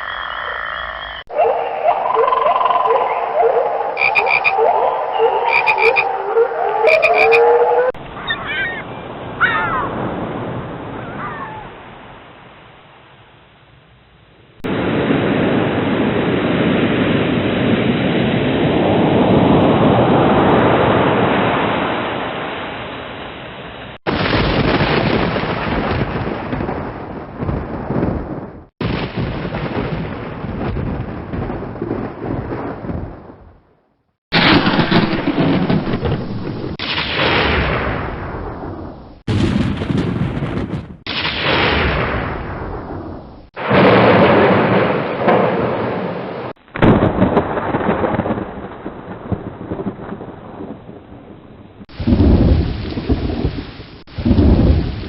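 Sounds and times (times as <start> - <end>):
frogs croaking: 0.0 - 9.8
thunder rumbling: 0.0 - 13.5, 14.5 - 55.0
high chirps: 4.0 - 6.1, 6.8 - 7.5
rain hiss: 51.8 - 55.0.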